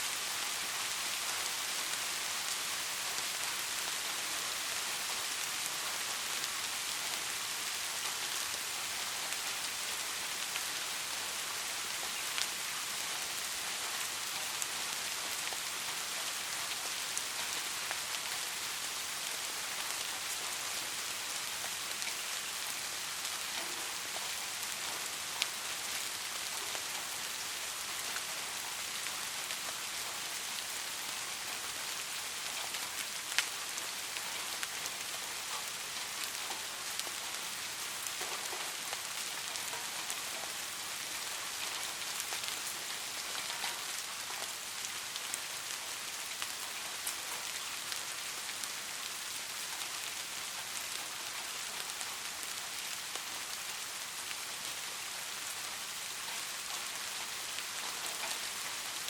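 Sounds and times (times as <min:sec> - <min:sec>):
steady rainfall hiss: 0:00.0 - 0:59.0.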